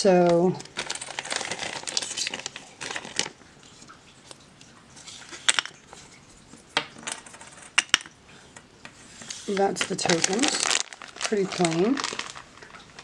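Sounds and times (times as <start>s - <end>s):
plastic bag crinkling: 0.0s - 4.0s, 9.2s - 13.0s.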